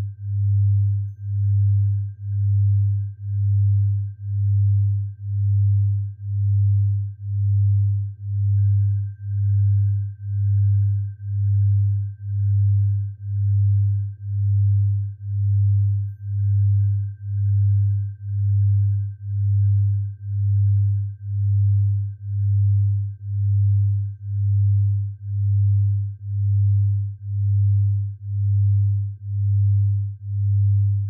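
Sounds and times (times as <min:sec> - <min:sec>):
faint steady high tone: 0:00.0 - 0:28.0
pulsing low synthesized tone: 0:00.0 - 0:31.0.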